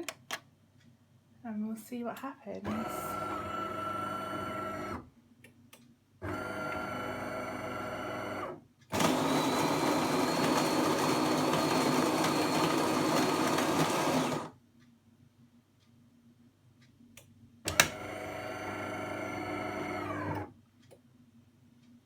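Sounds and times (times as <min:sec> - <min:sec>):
coffee machine motor whine: 0:02.7 - 0:05.0, 0:06.2 - 0:14.5, 0:17.7 - 0:20.5.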